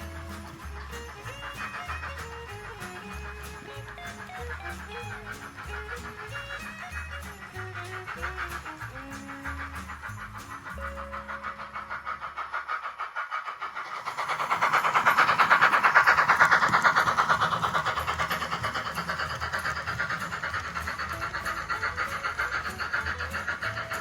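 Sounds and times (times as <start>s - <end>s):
model train wheels clicking: 0.0s - 24.0s.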